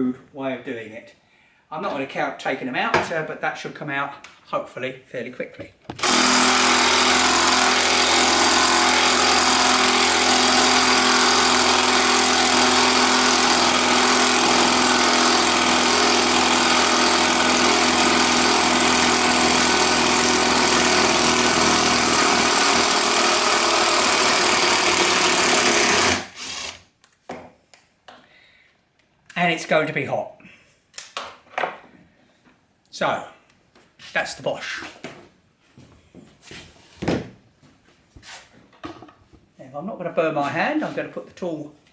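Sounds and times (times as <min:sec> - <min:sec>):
impact driver running: 0:05.9 - 0:26.9.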